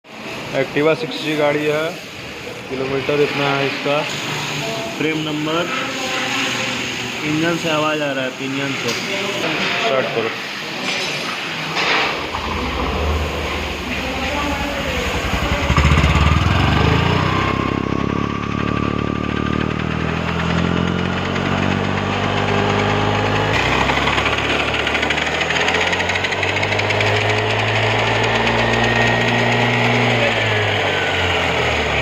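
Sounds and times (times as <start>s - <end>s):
scooter engine revving: 12.1s - 32.0s.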